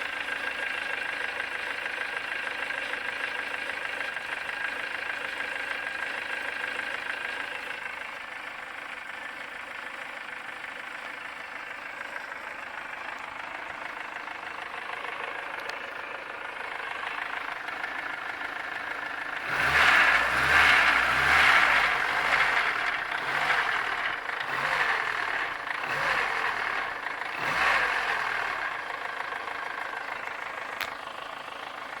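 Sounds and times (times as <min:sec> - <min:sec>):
car engine idling with a knock: 0:00.0 - 0:19.2, 0:28.3 - 0:32.0
engine revving in quick blips: 0:19.4 - 0:28.9.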